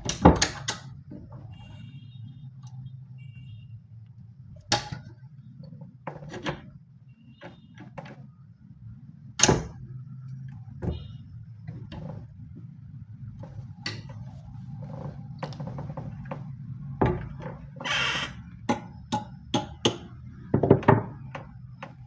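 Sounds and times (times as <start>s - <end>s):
knocks on wooden cabinet: 15.6s - 17.7s, 19.6s - 22.0s.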